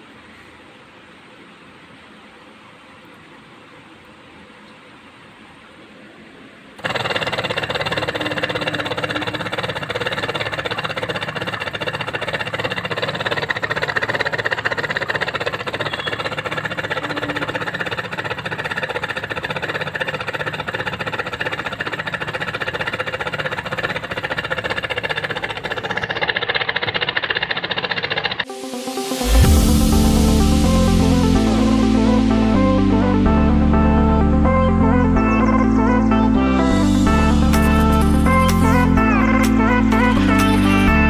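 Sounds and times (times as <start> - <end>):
small electric motor whining: 6.8 - 29.5.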